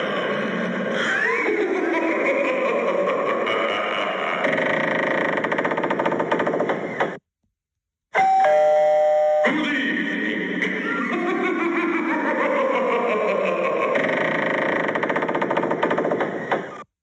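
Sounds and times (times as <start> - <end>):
doorbell chime: 8.2 - 9.5
rattling spooky sound effect: 9.4 - 16.7.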